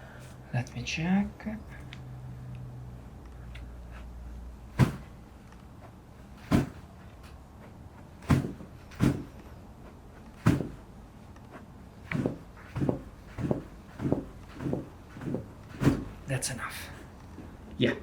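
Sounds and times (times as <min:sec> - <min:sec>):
sharp thumps: 0:04.7 - 0:05.2, 0:06.4 - 0:06.9, 0:08.2 - 0:09.5, 0:10.4 - 0:10.9, 0:12.0 - 0:16.3.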